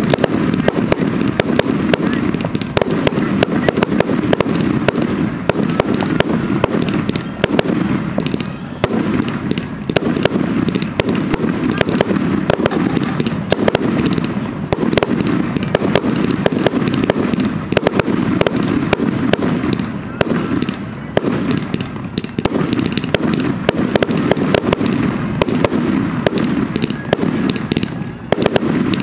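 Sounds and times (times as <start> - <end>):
fireworks bangs and pops: 0.0 - 29.0
rumble of firework bursts: 0.0 - 29.0.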